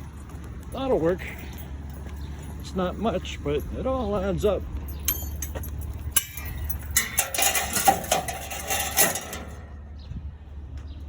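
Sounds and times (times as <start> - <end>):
ringing metal knocks: 4.9 - 9.8
scrap metal clattering: 5.0 - 9.9.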